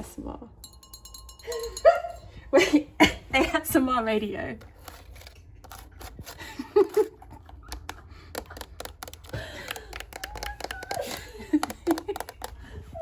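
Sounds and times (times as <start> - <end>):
radio knobs clicking and tapping: 7.4 - 12.7.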